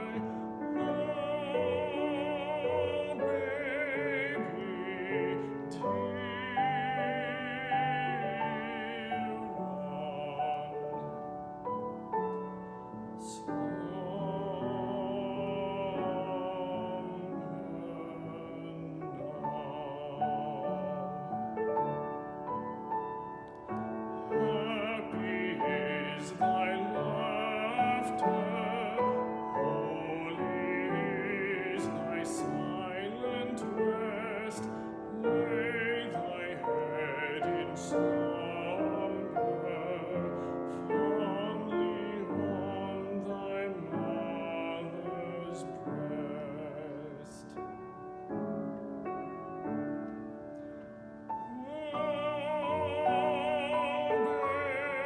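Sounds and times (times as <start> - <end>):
classical solo voice singing: 0.0 - 55.0
piano: 0.0 - 55.0.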